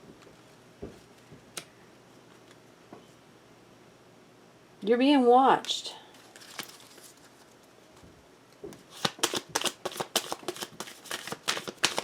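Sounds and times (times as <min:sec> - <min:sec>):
cards being shuffled: 0:06.2 - 0:07.4, 0:08.9 - 0:12.0.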